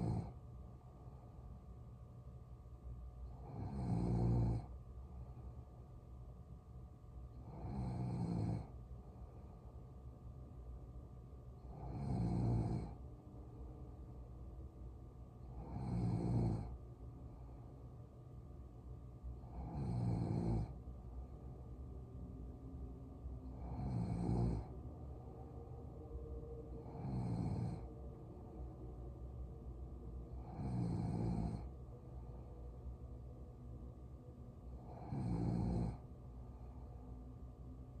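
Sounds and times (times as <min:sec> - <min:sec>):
woman snoring: 0:00.0 - 0:00.4, 0:03.3 - 0:04.7, 0:07.4 - 0:08.7, 0:11.7 - 0:13.0, 0:15.5 - 0:16.8, 0:19.4 - 0:20.8, 0:23.4 - 0:24.8, 0:26.8 - 0:28.0, 0:30.3 - 0:31.7, 0:34.8 - 0:36.0.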